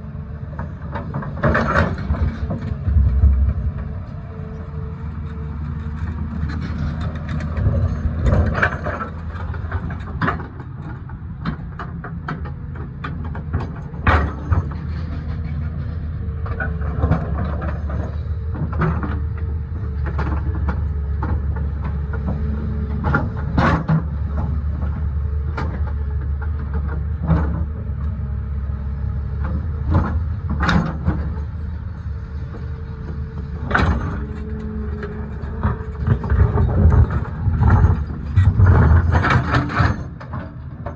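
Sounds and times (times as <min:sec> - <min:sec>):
excavator diesel engine running: 0:00.0 - 0:40.9
steady whine: 0:00.9 - 0:06.6
knocks and rattles cutting rock: 0:33.6 - 0:40.9.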